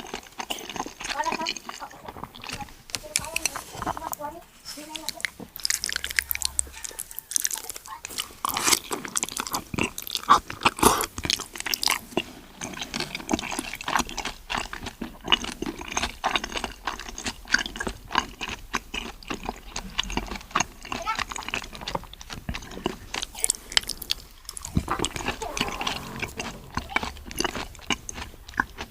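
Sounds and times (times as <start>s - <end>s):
person chewing seafood: 0.0s - 28.9s
wet mouth smacking clicks: 5.0s - 11.0s.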